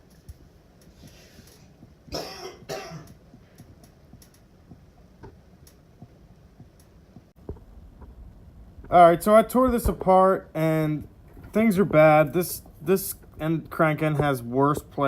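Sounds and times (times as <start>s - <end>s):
person coughing: 2.1s - 3.2s
faint clicks: 3.0s - 4.5s.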